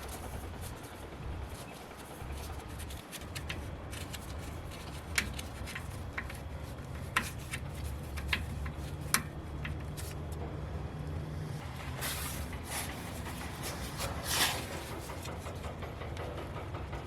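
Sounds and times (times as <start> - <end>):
steady low hum: 0.0 - 17.0
hand tools and metal parts clinking: 11.7 - 16.2.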